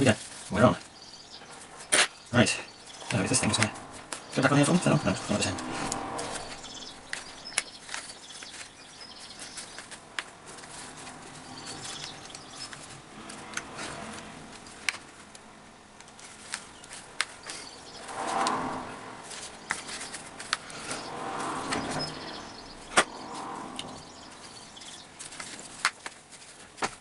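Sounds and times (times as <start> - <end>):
soft rustling and rubbing: 0.0 - 27.0.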